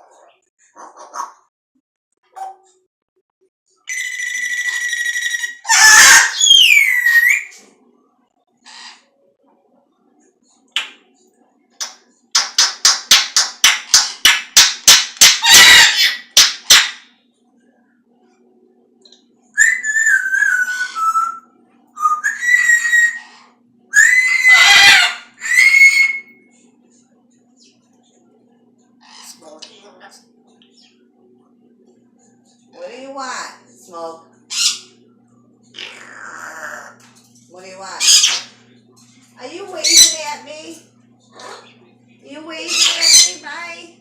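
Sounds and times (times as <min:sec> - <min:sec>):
parrot clucking: 0:00.0 - 0:01.5, 0:03.9 - 0:07.5, 0:12.6 - 0:17.0, 0:22.2 - 0:26.4, 0:34.5 - 0:35.0, 0:35.7 - 0:37.0, 0:39.8 - 0:40.2, 0:42.7 - 0:43.4
parrot screeching: 0:03.9 - 0:07.6, 0:15.2 - 0:17.0, 0:19.6 - 0:21.4, 0:22.2 - 0:26.4, 0:34.5 - 0:34.9, 0:35.8 - 0:37.0, 0:38.0 - 0:38.6, 0:39.8 - 0:40.4, 0:42.7 - 0:43.4
parrot whistling: 0:03.9 - 0:07.6, 0:19.6 - 0:26.5.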